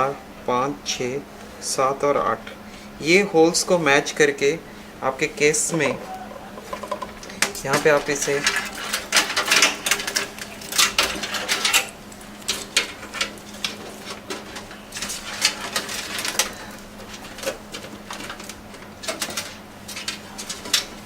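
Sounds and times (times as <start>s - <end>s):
hard parts knocking on metal case: 5.8s - 11.2s.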